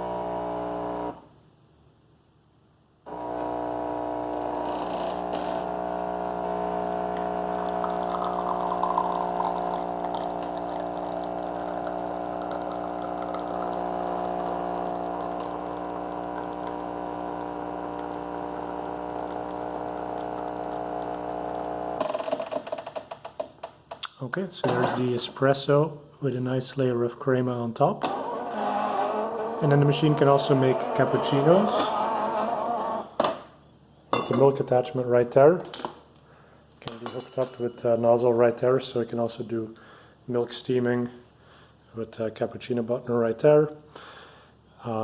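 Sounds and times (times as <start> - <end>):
espresso machine pump humming: 0.0 - 1.2, 3.1 - 22.1, 28.0 - 33.3.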